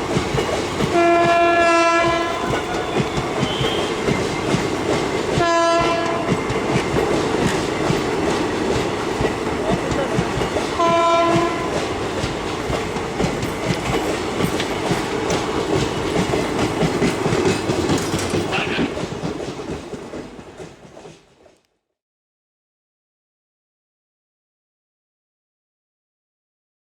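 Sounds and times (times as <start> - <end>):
train wheels clattering on track: 0.0 - 21.6
locomotive horn: 0.9 - 4.1, 5.4 - 6.4, 10.8 - 11.8.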